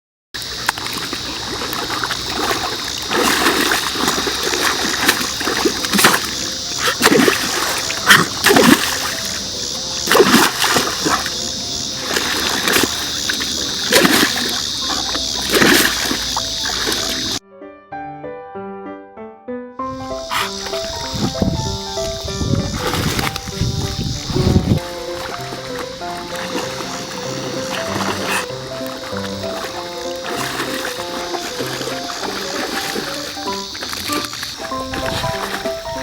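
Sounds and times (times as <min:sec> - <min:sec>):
muddy water splatter: 0:00.4 - 0:17.4, 0:20.3 - 0:36.0
dog sneezing in mud: 0:00.6 - 0:09.4, 0:10.0 - 0:17.4, 0:20.3 - 0:21.4, 0:24.9 - 0:35.8.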